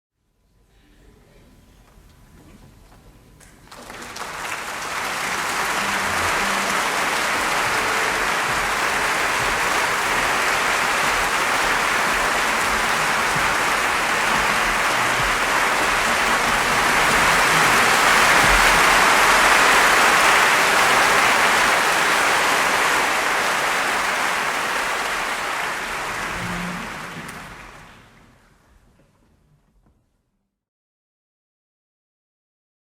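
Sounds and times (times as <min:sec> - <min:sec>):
crowd applauding: 0:03.6 - 0:28.4.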